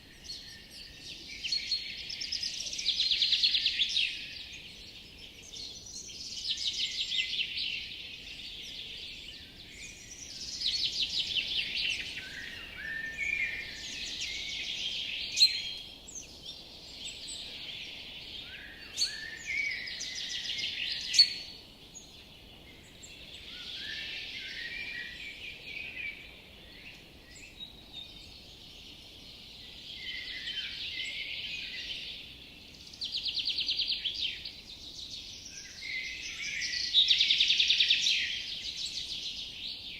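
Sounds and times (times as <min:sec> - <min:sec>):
faint steady hiss: 0:00.0 - 0:39.9
songbirds singing: 0:00.0 - 0:39.9.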